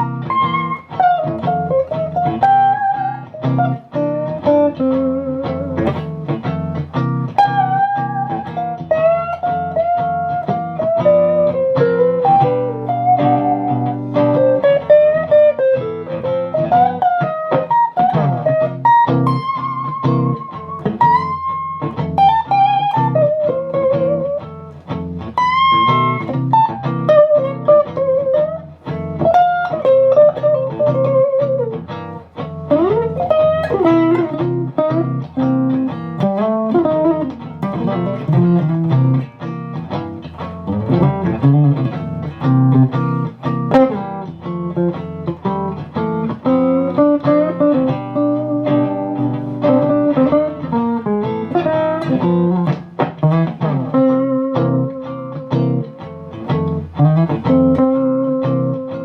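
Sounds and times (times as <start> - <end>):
electric guitar playing: 0.0 - 59.0.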